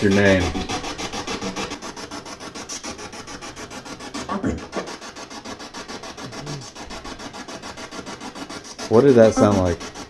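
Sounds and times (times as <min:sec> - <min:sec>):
pulsing radio static hiss: 0:04.2 - 0:07.4, 0:08.6 - 0:10.0
radio sound snatches: 0:06.1 - 0:07.2, 0:08.8 - 0:09.8.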